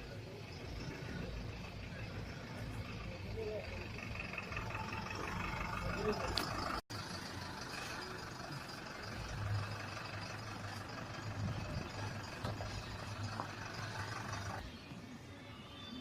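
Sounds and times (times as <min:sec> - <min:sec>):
vehicle engine and road noise: 0:00.0 - 0:16.0.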